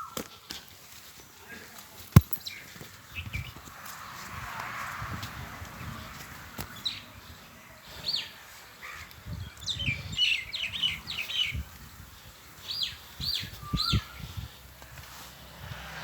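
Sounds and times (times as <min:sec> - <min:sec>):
small birds chirping: 0:06.6 - 0:14.9.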